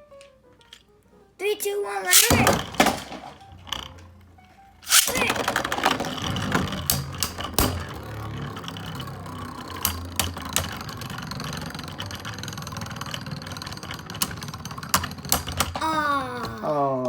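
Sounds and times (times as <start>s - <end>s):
tops clicking together: 2.1s - 3.0s, 4.9s - 5.6s
spinning tops whirring: 2.1s - 3.2s, 4.9s - 15.8s.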